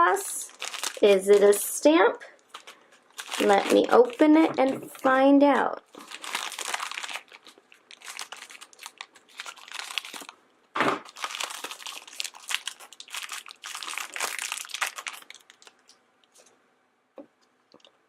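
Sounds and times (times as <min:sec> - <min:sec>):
plastic packet crinkling: 0:00.3 - 0:01.8, 0:02.4 - 0:05.2, 0:05.9 - 0:10.4, 0:11.0 - 0:16.4.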